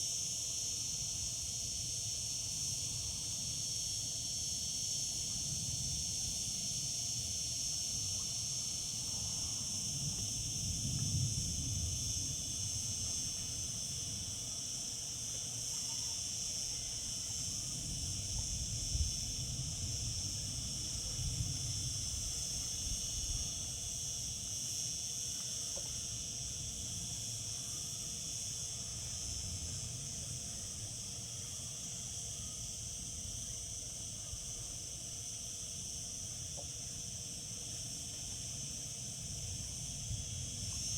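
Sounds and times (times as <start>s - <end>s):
cicadas droning: 0.0s - 40.9s.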